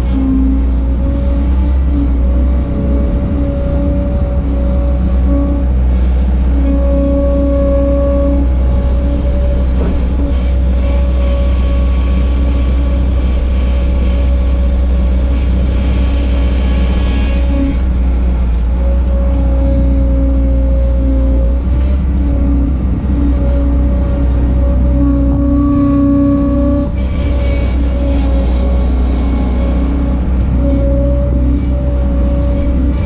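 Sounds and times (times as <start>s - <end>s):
skid steer engine rumble: 0.0s - 33.0s.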